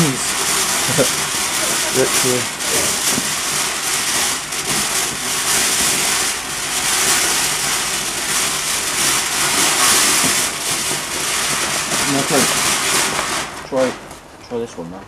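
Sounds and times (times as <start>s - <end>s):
firework fountain hissing: 0.0s - 14.3s.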